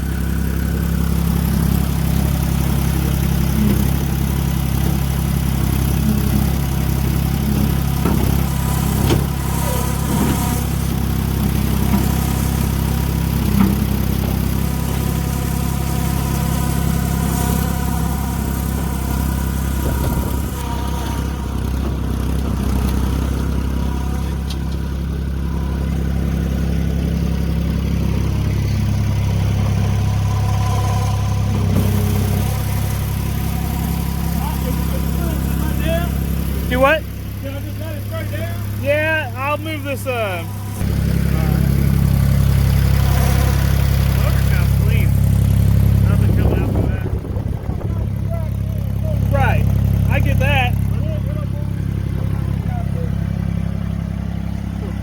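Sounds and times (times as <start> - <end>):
diesel engine running: 0.0 - 55.0
metal clanks and knocks: 7.5 - 10.5, 19.1 - 25.2.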